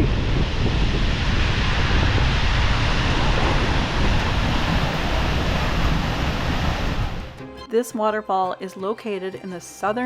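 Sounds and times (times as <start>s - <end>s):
wind buffeting microphone: 0.0s - 7.4s
waterfall roaring: 0.7s - 7.4s.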